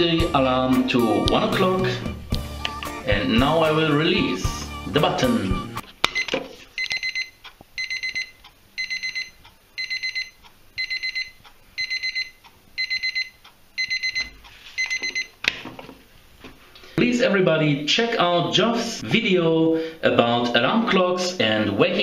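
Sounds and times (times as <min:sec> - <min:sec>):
alarm clock beeping: 0:06.2 - 0:15.4.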